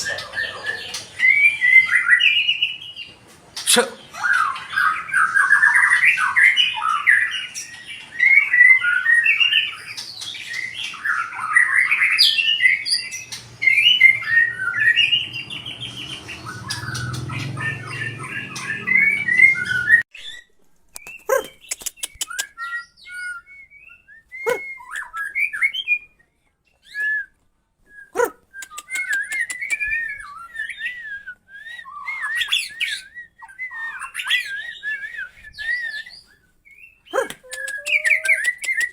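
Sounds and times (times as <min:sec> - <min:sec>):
bird whistles and trills: 0:03.6 - 0:27.3, 0:28.0 - 0:38.9
bird sharp clicks: 0:21.0 - 0:22.5.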